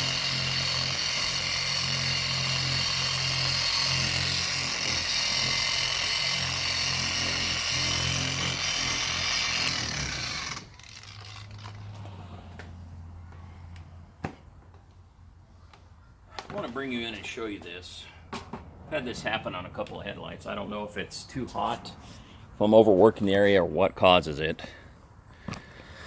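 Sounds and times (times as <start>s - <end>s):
electric orbital polisher sanding: 0.0s - 12.6s.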